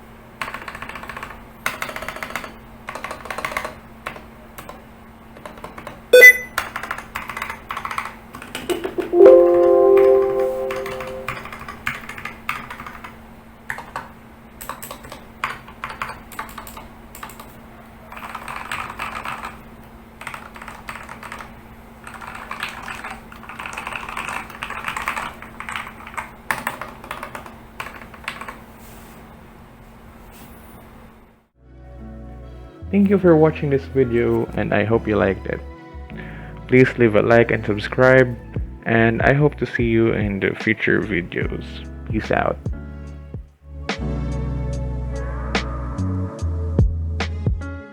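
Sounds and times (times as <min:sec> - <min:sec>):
short ringing tone: 0:06.2 - 0:06.6, 0:09.0 - 0:11.4
mechanical keyboard keys clacking: 0:20.2 - 0:28.5.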